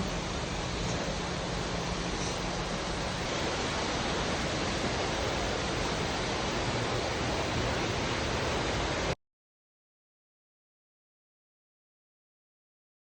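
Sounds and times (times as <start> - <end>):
steady rushing hiss: 0.0 - 9.2.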